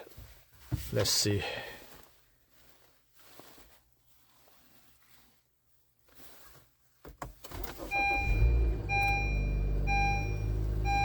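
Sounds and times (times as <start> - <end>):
car engine starting and idling: 7.5 - 11.0
dashboard warning chime: 7.8 - 11.0.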